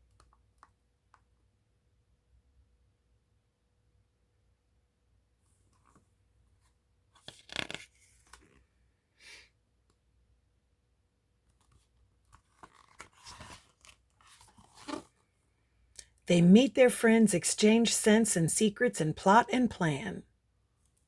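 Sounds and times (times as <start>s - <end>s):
book pages rustling: 7.2s - 8.5s, 11.6s - 15.1s.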